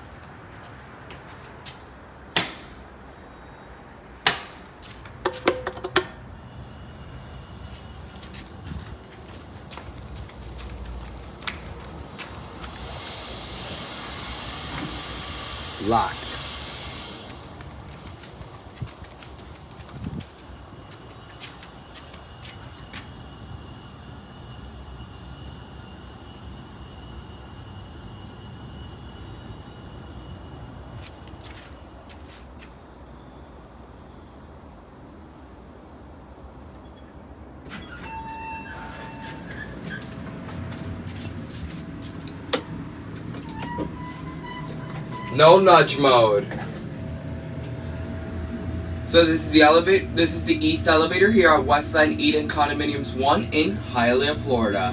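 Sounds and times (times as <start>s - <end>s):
sharp clicks and knocks: 4.3s - 6.2s
high steady whine: 5.9s - 31.9s, 37.7s - 54.9s.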